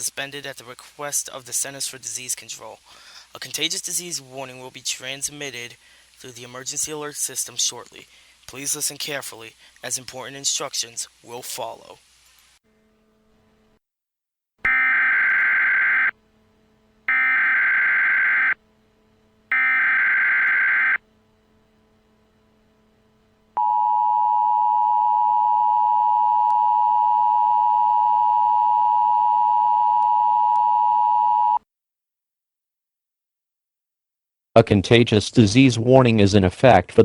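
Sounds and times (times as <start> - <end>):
digital header bursts: 14.7 - 16.1, 17.1 - 18.6, 19.5 - 21.0
two-tone attention signal: 14.7 - 16.1, 17.1 - 18.6, 19.5 - 21.0.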